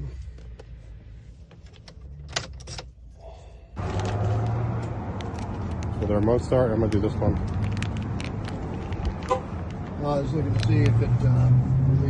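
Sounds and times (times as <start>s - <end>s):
car engine starting and running: 3.8s - 12.0s.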